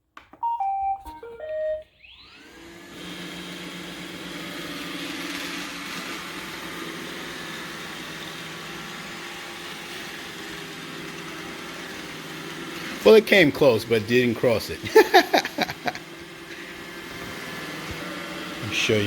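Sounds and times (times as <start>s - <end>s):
robot vacuum motor whining: 2.0s - 13.0s.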